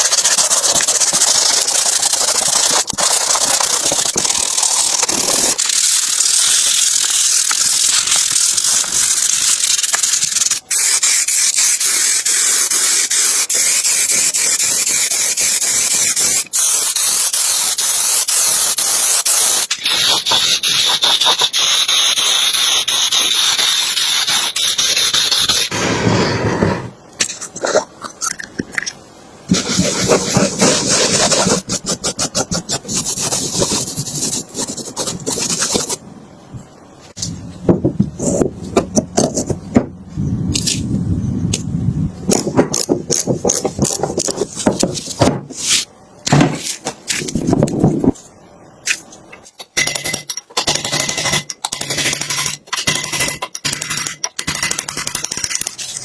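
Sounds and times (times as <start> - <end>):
spray hiss: 1.5 - 26.2
clicks and knocks on metal parts: 48.9 - 55.8.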